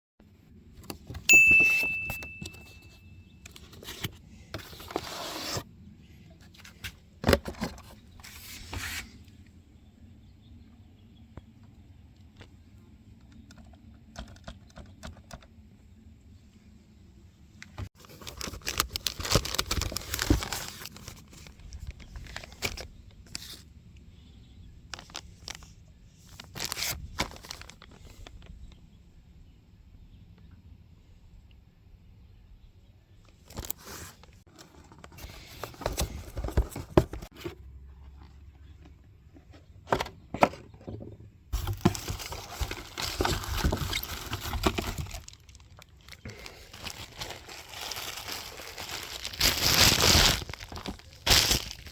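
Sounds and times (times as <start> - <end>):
plastic and cardboard crinkling: 1.0 - 5.6, 17.9 - 23.6, 24.9 - 25.7, 26.3 - 28.5, 33.5 - 38.3, 41.6 - 51.9.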